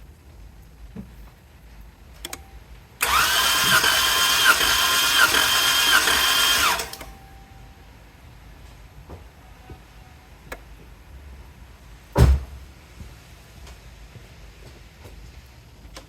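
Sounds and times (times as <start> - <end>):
engine cranking on starter motor: 3.0 - 7.2.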